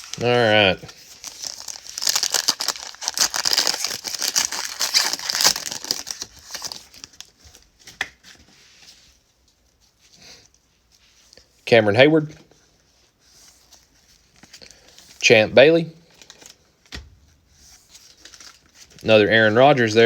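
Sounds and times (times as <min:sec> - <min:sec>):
plastic wrapper tearing and crinkling: 0:00.0 - 0:07.6, 0:18.0 - 0:19.1.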